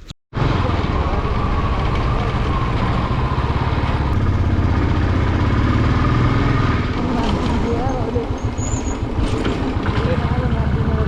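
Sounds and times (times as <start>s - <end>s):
vehicle engine running: 0.4s - 11.0s.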